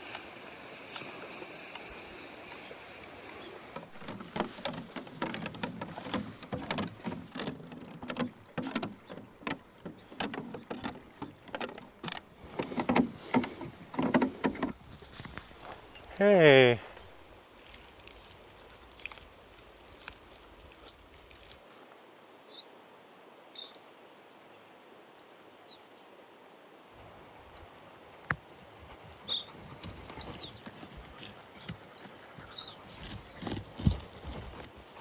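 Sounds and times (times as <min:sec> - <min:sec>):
faint steady hiss: 0:00.0 - 0:07.3, 0:12.1 - 0:35.0
small birds chirping: 0:28.5 - 0:35.0.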